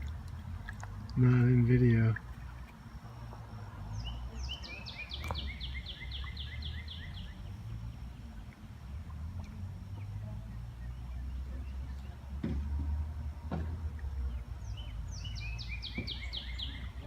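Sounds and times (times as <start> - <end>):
bird singing falling notes: 3.9 - 7.5, 14.6 - 17.0.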